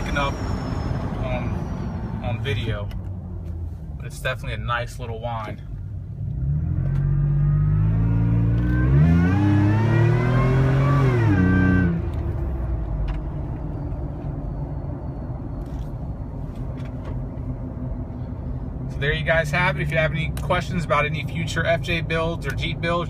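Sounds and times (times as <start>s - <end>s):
supercharger whine: 0.0s - 3.6s, 5.7s - 23.0s
road noise: 0.0s - 23.0s
car engine accelerating hard: 6.0s - 15.0s.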